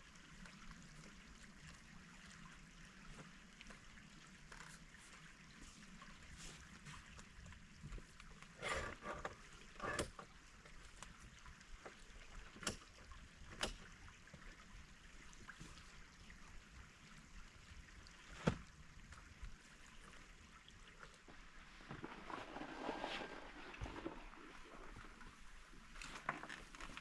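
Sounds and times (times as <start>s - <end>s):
stream running: 0.0s - 27.0s.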